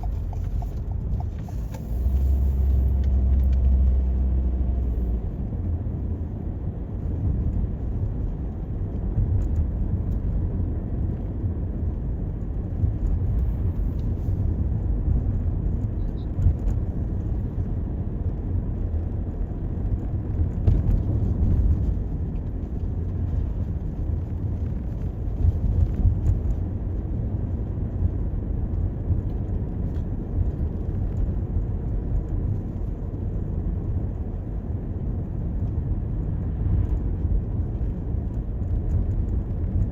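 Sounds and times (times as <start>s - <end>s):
car engine running: 0.0s - 11.5s
tyres rumbling on road: 0.0s - 39.9s.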